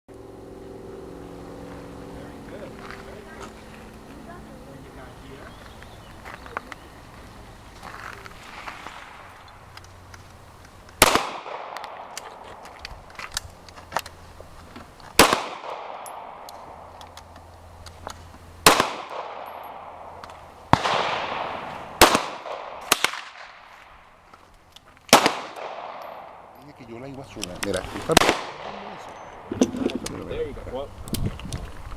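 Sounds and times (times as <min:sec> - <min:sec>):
loud gunshots echoing: 0:11.0 - 0:12.4, 0:15.2 - 0:16.9, 0:18.6 - 0:23.7, 0:25.1 - 0:26.6, 0:28.1 - 0:29.6
faint distant gunshots: 0:11.0 - 0:12.7, 0:15.2 - 0:16.9, 0:18.6 - 0:24.2, 0:25.1 - 0:26.6, 0:28.1 - 0:29.7.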